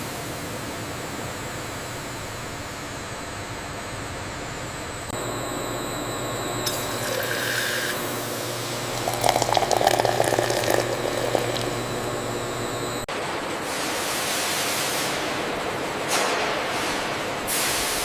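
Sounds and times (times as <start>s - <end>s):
machine hum: 0.0s - 13.1s
liquid filling bottles: 6.6s - 12.6s.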